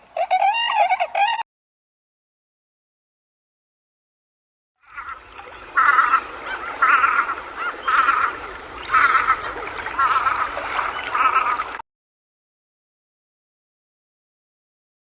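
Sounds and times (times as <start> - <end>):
bird calling with quavering pitch: 0.0 - 1.4, 4.8 - 11.8.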